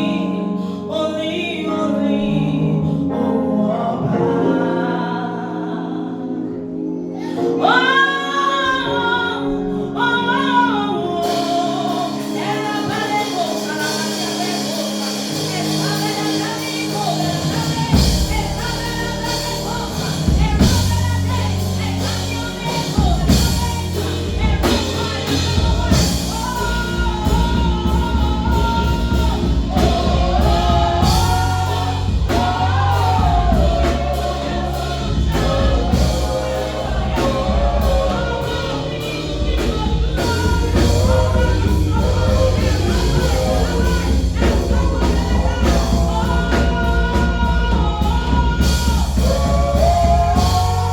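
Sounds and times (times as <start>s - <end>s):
gospel choir singing: 0.0s - 50.9s
band playing: 10.3s - 50.9s.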